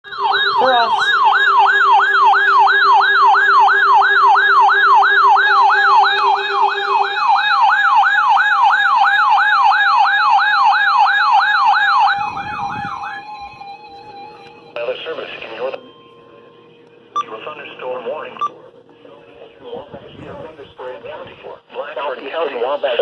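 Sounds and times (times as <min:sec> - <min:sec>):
electronic siren yelping: 0:00.0 - 0:14.8.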